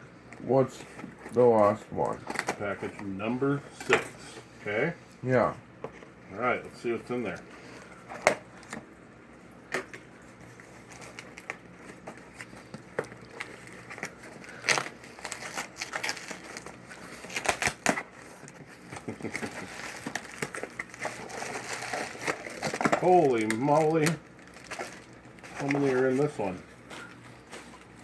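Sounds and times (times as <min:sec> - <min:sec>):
packaging crinkling and tearing: 0:09.9 - 0:28.0.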